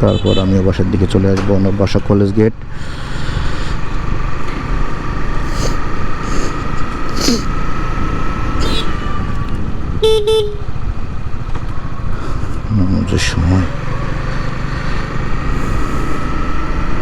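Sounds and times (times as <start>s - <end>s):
vehicle horn toots: 0.0s - 0.5s, 8.6s - 9.1s, 10.0s - 10.8s
motorcycle engine: 3.1s - 17.0s.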